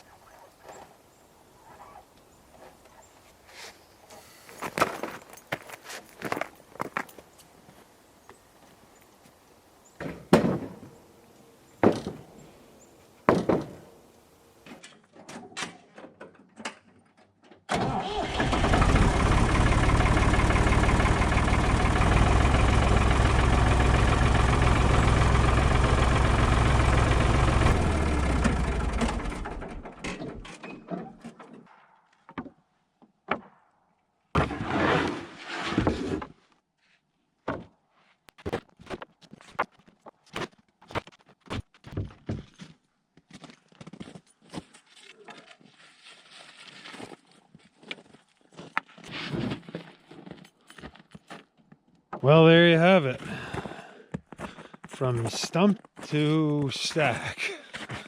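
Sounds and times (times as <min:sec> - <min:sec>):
engine running loud: 0:18.2 - 0:29.8
clatter: 0:18.6 - 0:30.6.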